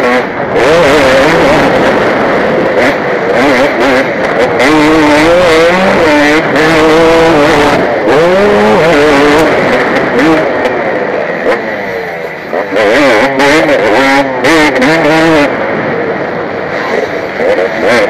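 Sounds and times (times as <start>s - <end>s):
heavy rushing wind noise: 0.0s - 18.0s
motocross bike engine revving: 0.0s - 18.0s.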